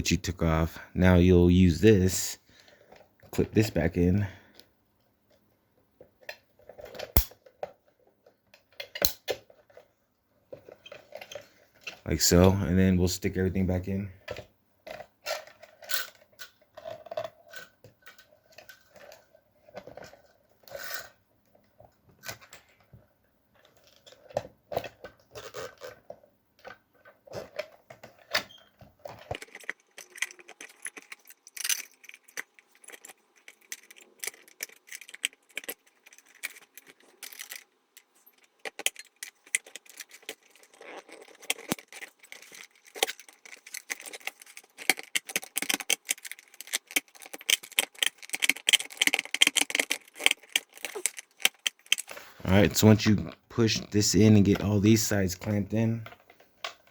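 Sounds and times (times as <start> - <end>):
plastic and metal parts rattling: 10.5 - 12.6, 14.2 - 21.2, 23.6 - 56.9.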